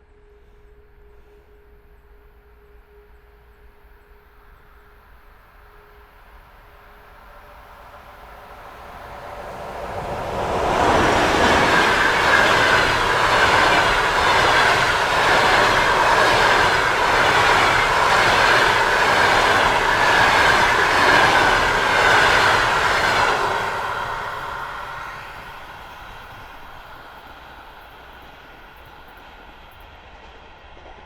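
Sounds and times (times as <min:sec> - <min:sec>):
train wheels rumbling on rails: 0:06.8 - 0:31.0.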